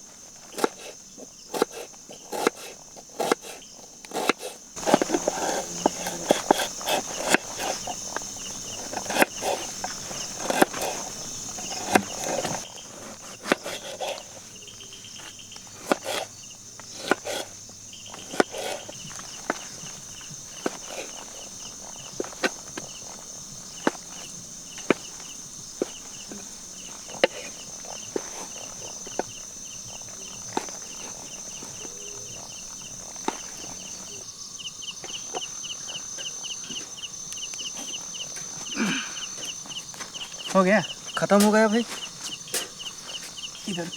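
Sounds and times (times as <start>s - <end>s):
insects droning: 0.0s - 43.9s.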